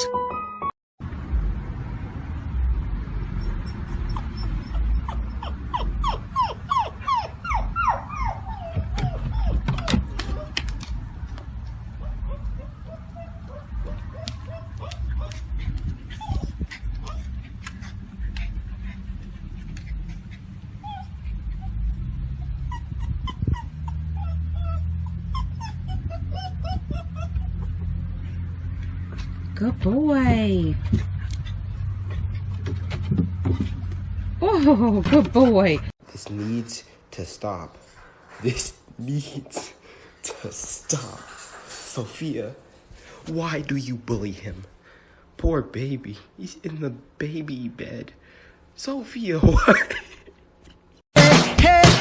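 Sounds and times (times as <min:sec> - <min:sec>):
dog whining: 0:03.4 - 0:10.8, 0:12.0 - 0:17.5, 0:19.8 - 0:28.2.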